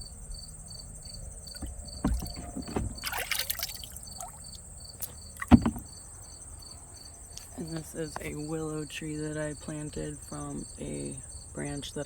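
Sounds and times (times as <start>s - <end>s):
crickets chirping: 0.0s - 12.0s
high insect whine: 0.0s - 12.0s
handling rustle: 1.2s - 6.0s
close knocks: 1.5s - 6.0s.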